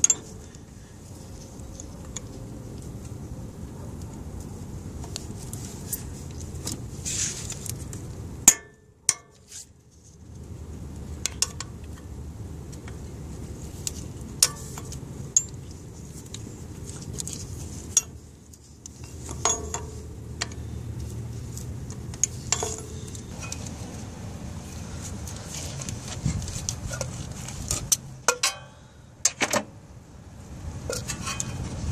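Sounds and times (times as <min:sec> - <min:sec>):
hand tools clinking on metal: 0:00.0 - 0:00.4, 0:19.0 - 0:20.6, 0:22.2 - 0:23.7, 0:27.7 - 0:28.8.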